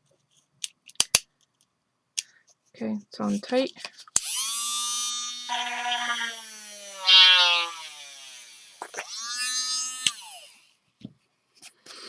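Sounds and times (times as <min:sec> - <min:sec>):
rotary tool whining at high speed: 0:04.2 - 0:10.7.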